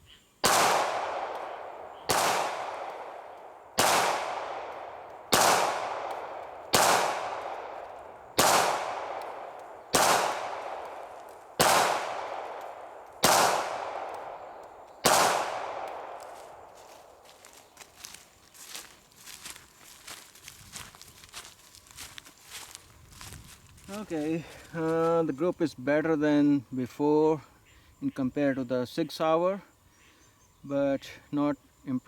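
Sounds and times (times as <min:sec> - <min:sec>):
pistol shots: 0:00.4 - 0:16.7.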